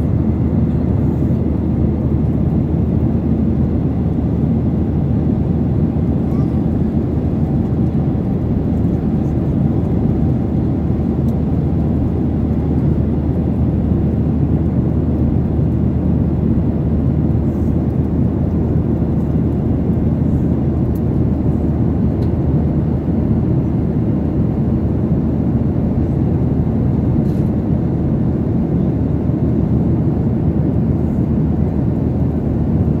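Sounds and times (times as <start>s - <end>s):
jet engines and rushing air: 0.0s - 33.0s.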